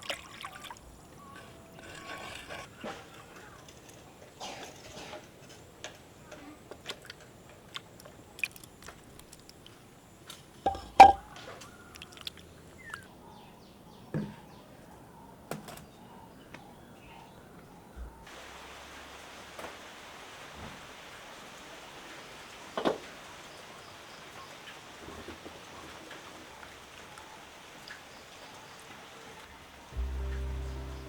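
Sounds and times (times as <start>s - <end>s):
objects clicking and knocking: 10.7s - 11.3s.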